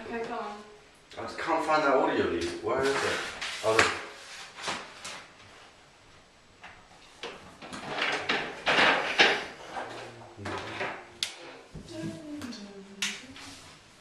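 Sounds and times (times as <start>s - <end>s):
objects shuffled and knocked: 7.2s - 12.2s.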